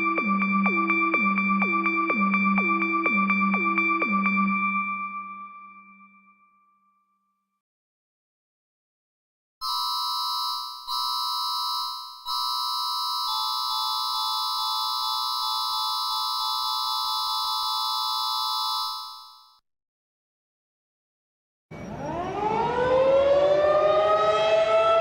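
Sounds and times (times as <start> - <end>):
electronic emergency alert tone: 9.6 - 19.6.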